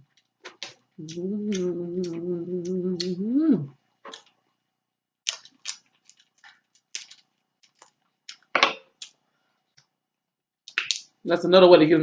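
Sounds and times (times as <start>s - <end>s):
crab shells cracking: 0.0s - 2.2s, 4.0s - 4.4s, 5.2s - 9.2s, 10.6s - 11.2s.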